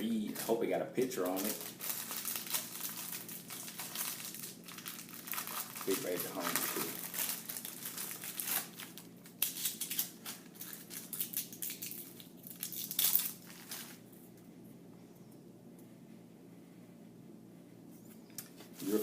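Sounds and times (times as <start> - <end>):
plastic wrapper crinkling: 0.3 - 14.0
cookie crunching: 1.2 - 14.0.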